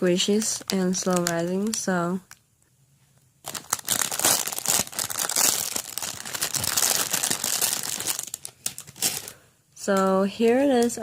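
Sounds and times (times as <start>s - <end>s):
plastic packaging crinkling: 0.2s - 2.4s, 3.4s - 9.4s.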